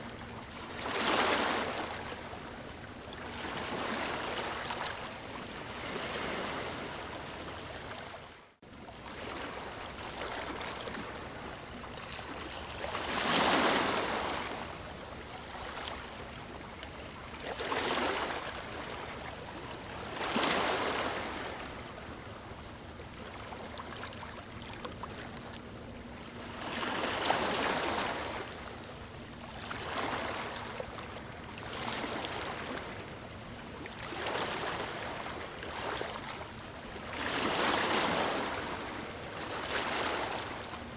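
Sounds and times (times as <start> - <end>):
ocean waves breaking on beach: 3.3 - 8.2, 9.1 - 14.7, 34.0 - 40.9.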